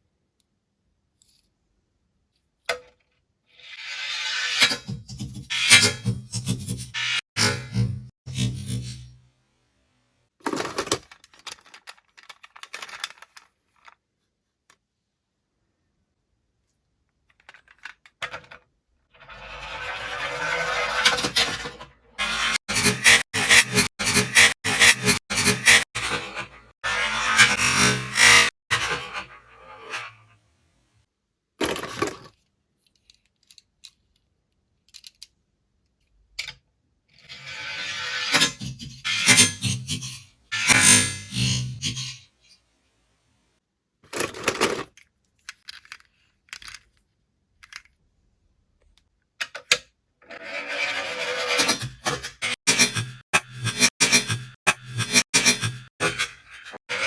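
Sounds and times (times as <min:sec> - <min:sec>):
toy car rolling on plastic track: 0:10.4 - 0:14.0, 0:17.3 - 0:23.2, 0:50.2 - 0:51.6
light plastic clicks and rattles: 0:11.0 - 0:14.0
toy car rolling rush: 0:19.2 - 0:23.2.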